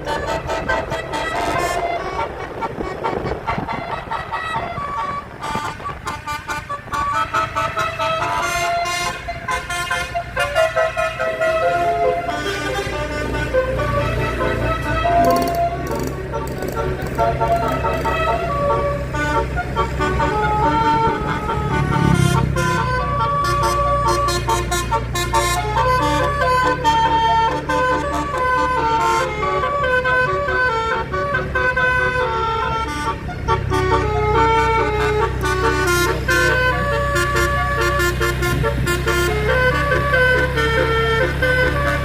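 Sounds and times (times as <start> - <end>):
bus engine drone: 0.0 - 42.0
multi-tone bus horn tune: 0.0 - 42.0.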